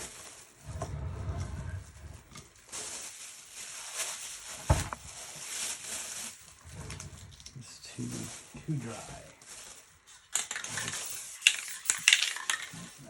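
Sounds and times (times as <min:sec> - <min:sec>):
low rumble: 0:00.6 - 0:02.3, 0:06.5 - 0:07.6.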